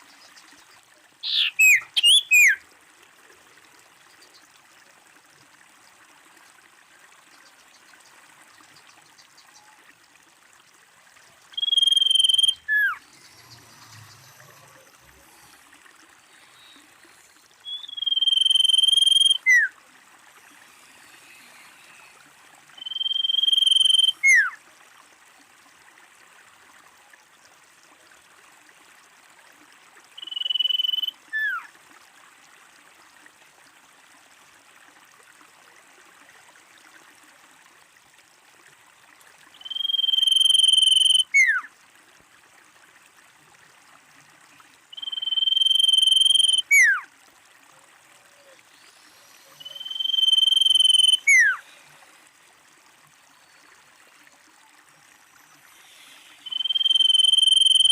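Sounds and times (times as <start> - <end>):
bird whistling: 1.2 - 2.6, 11.6 - 13.0, 17.7 - 19.7, 22.8 - 24.6, 30.2 - 31.6, 39.6 - 41.6, 45.0 - 47.0, 49.6 - 51.6, 56.3 - 57.9.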